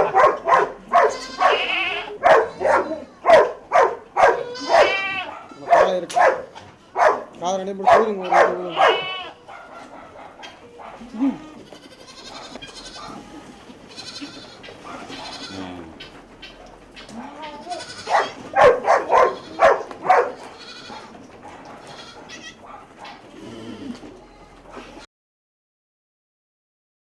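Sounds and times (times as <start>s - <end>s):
goats bleating: 0.0s - 3.4s, 4.2s - 5.8s, 6.6s - 7.0s, 8.1s - 9.7s, 10.4s - 16.2s, 17.0s - 22.7s, 23.3s - 25.0s.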